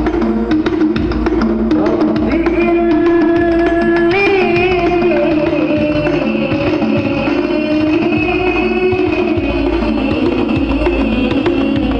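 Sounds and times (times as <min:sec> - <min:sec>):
loud music with heavy bass: 0:00.0 - 0:11.9.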